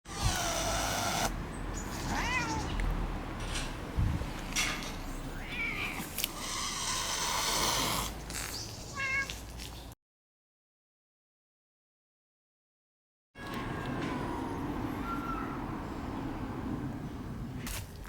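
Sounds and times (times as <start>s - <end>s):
cats yowling: 1.9s - 2.8s, 5.4s - 8.1s, 14.0s - 15.7s.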